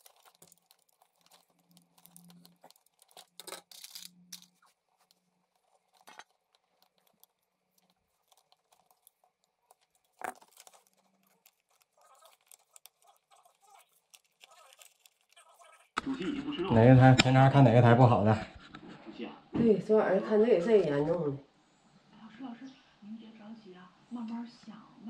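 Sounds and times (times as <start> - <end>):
cable end scraping and crinkling: 0.0 - 16.0.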